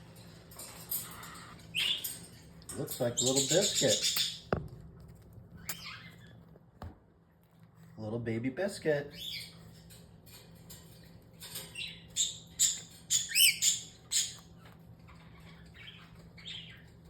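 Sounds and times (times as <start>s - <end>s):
cockatiels squawking and chirping: 0.9s - 2.3s, 3.0s - 4.5s, 5.6s - 6.4s, 11.5s - 17.0s.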